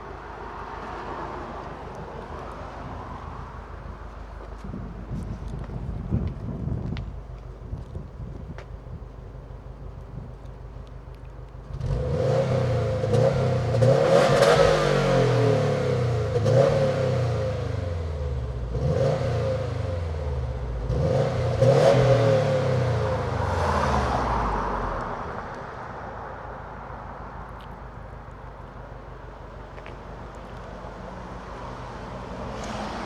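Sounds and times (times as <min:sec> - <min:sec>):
car engine revving: 0:11.6 - 0:25.7.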